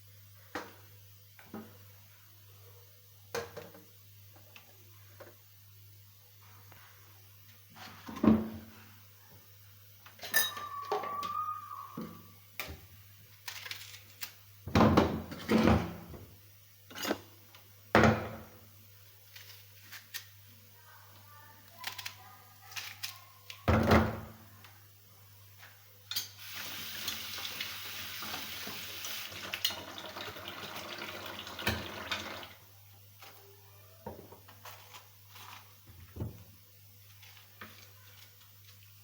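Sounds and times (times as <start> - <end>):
dishes and utensils clunking: 10.2 - 11.3.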